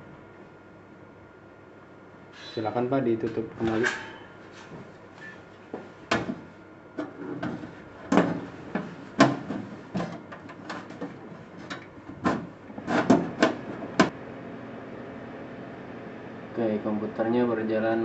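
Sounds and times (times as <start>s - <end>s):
metal computer case clanking: 3.2s - 4.8s, 6.1s - 14.1s.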